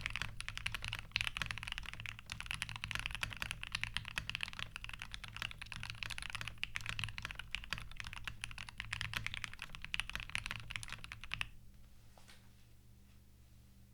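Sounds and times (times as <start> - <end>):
fast typing on mechanical keyboard: 0.0 - 11.5.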